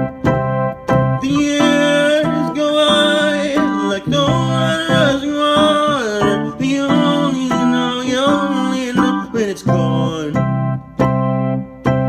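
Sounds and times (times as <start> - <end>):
guitar: 0.0 - 12.0
keyboard chords: 0.0 - 12.0
person singing: 1.2 - 10.6.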